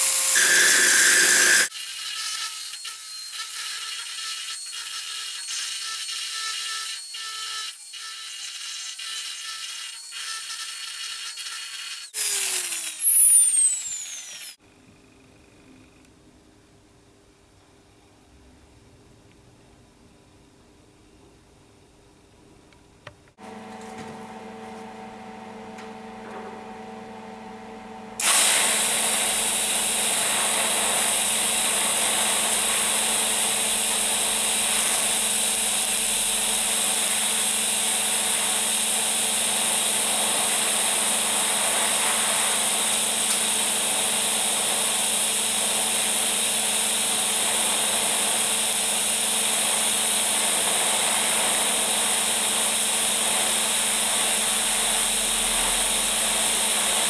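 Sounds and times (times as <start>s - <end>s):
welding arc hissing: 0.0s - 1.7s, 28.2s - 57.0s
welding machine hum: 0.0s - 2.0s, 27.6s - 57.0s.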